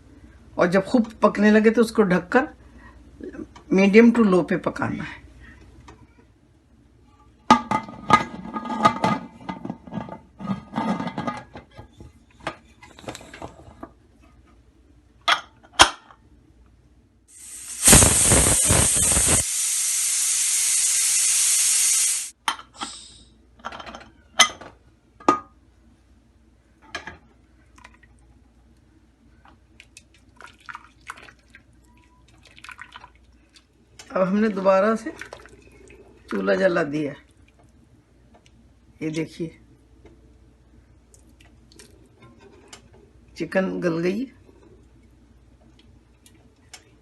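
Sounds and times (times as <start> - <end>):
pressure cooker venting steam: 17.3 - 23.2.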